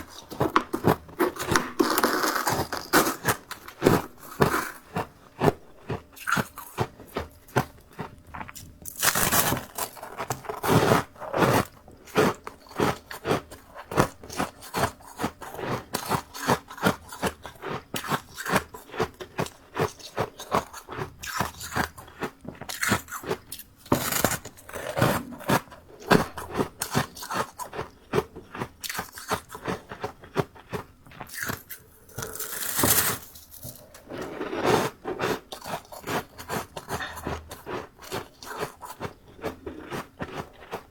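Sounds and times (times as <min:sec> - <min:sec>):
chewing crunchy frost: 0:00.0 - 0:40.9.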